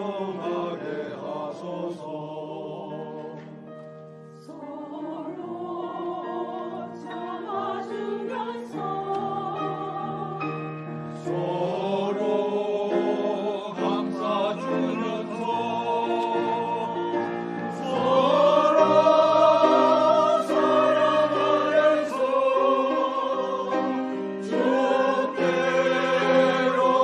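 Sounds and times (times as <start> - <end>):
choir singing a hymn: 0.0 - 27.0.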